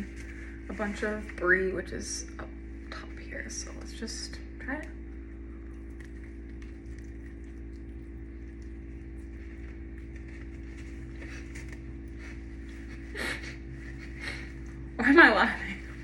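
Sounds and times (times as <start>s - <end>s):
low electrical hum: 0.0s - 16.0s
person chewing: 5.4s - 13.6s.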